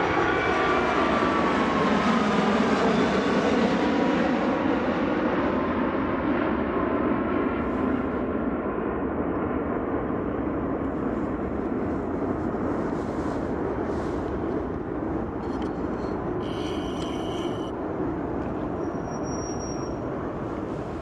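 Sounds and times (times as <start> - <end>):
jet engines rushing: 7.5 - 19.2, 19.9 - 21.0.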